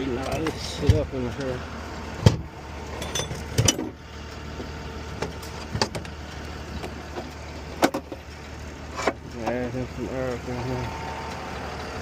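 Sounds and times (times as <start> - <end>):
vehicle engine hum: 0.0 - 12.0
tools knocking and clanking: 3.0 - 4.0, 7.8 - 8.2.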